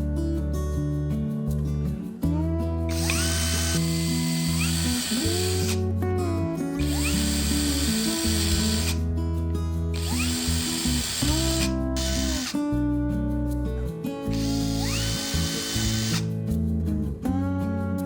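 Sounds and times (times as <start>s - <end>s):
power drill whining: 2.9s - 5.8s, 6.8s - 9.0s, 10.0s - 12.6s, 14.3s - 16.3s.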